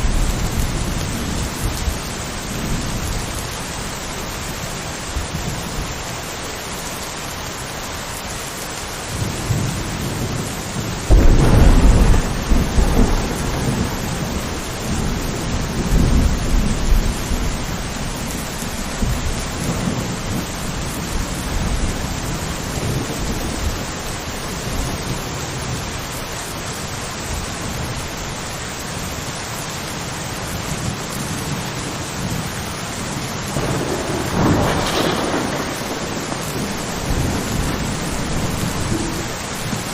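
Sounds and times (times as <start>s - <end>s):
thunder rumbling and cracking: 0.0s - 4.0s, 9.1s - 26.2s, 30.4s - 39.9s
steady rain: 0.0s - 39.9s.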